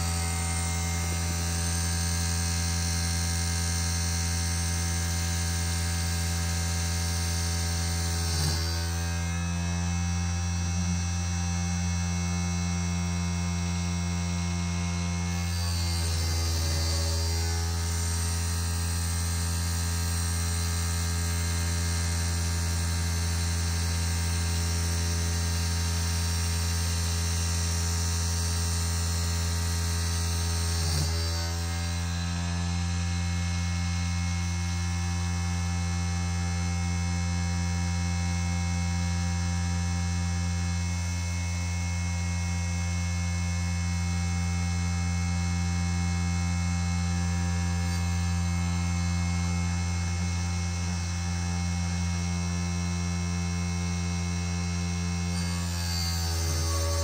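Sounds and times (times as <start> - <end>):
electric motor hum: 0.0 - 57.0.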